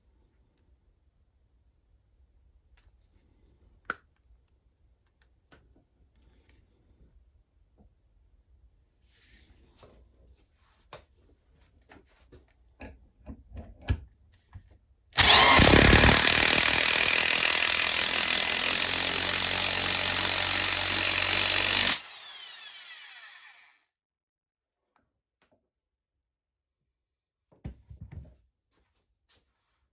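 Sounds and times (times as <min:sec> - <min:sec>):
impact wrench running: 0:15.2 - 0:23.7
motor winding down whine: 0:15.2 - 0:23.7.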